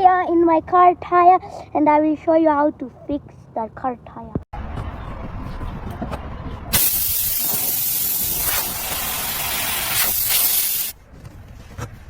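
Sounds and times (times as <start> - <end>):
compressed gas hissing from nozzle: 6.7 - 11.0.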